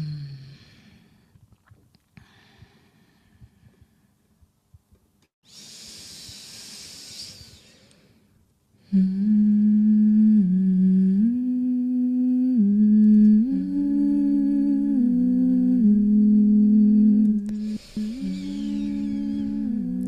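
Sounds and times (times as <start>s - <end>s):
person humming a melody: 0.0s - 0.6s, 8.8s - 20.0s
breathy exhale: 5.5s - 8.3s, 17.5s - 19.5s.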